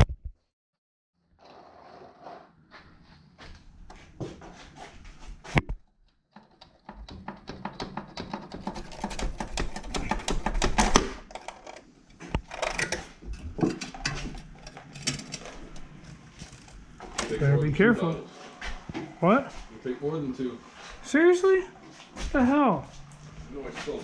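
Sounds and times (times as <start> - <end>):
hand tools clicking: 6.4 - 17.4.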